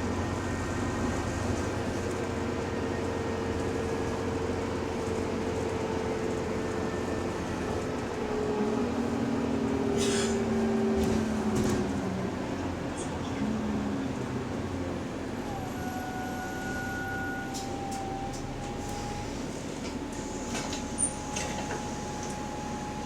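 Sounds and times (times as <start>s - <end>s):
bus driveline rumble: 0.0s - 23.0s
low whine: 15.3s - 19.6s
differential whine: 15.4s - 19.4s.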